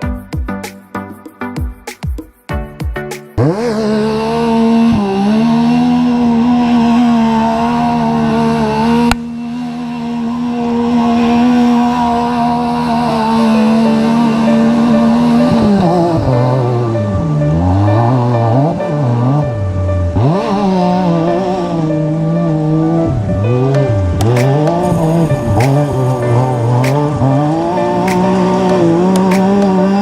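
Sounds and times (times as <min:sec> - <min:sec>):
off-road vehicle engine revving: 0:03.4 - 0:30.0
sharp click: 0:24.2 - 0:24.8, 0:25.6 - 0:26.0, 0:28.1 - 0:28.4, 0:29.2 - 0:29.7.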